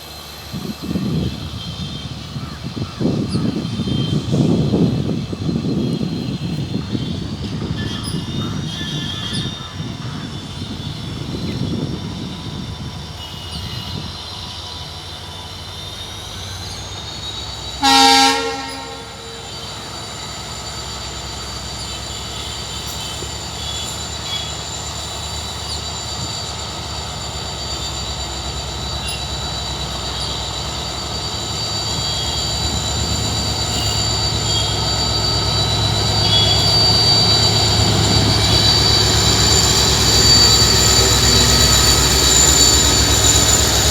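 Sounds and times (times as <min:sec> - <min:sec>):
diesel locomotive engine whining: 0:00.0 - 0:43.9
train horn blast: 0:17.8 - 0:20.0, 0:35.6 - 0:37.3.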